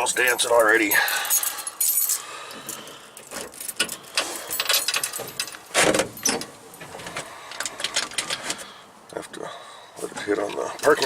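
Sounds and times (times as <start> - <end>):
handling clicks and rattles: 0.0 - 8.6.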